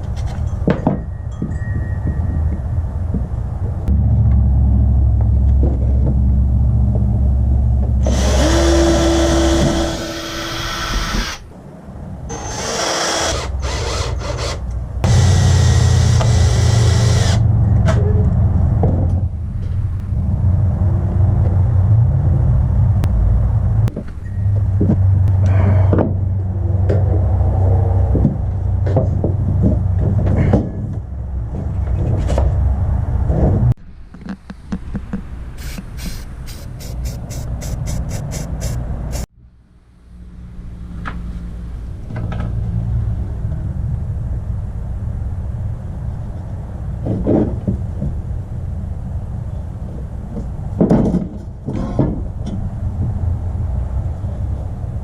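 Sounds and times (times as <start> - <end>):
steady low drone: 0.0 - 47.0
power tool running: 8.0 - 11.4, 12.3 - 17.4.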